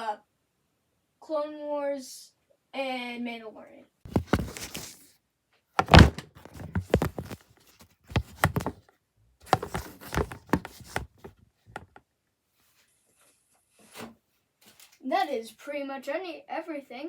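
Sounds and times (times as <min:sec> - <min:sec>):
thump on shelf: 0:04.1 - 0:04.9, 0:05.8 - 0:07.4, 0:08.1 - 0:08.7, 0:09.5 - 0:11.3
plastic toy bricks knocking: 0:05.8 - 0:07.4, 0:09.5 - 0:11.1.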